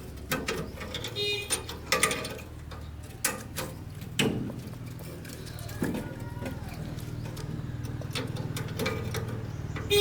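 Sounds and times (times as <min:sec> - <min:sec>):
sharp knocks and clicks: 0:00.2 - 0:05.0.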